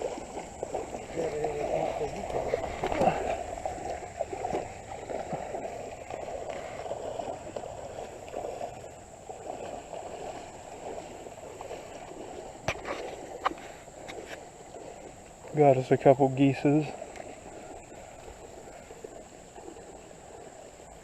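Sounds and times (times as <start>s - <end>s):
boots wading through water: 0.0s - 21.0s.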